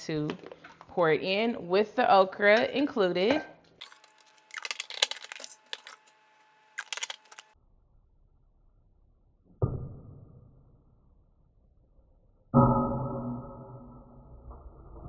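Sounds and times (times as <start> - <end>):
pods clinking against glass: 3.8 - 6.1.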